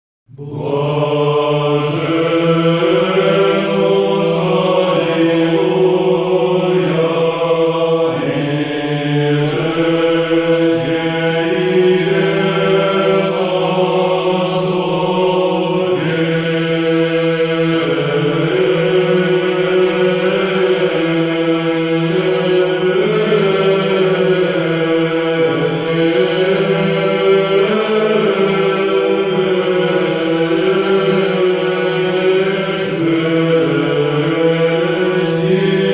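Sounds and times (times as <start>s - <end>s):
voices chanting: 0.4s - 35.9s.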